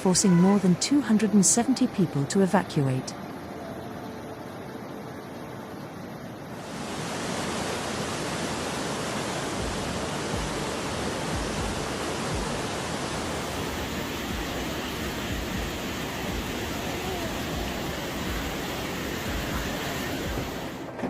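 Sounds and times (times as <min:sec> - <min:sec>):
storm water rushing: 0:06.5 - 0:20.9.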